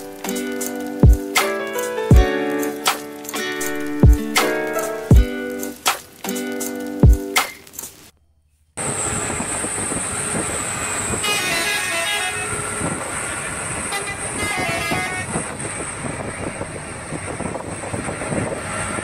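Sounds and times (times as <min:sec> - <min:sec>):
steady noisy rumble: 0:08.8 - 0:19.0
musical horn tooting: 0:11.1 - 0:15.9.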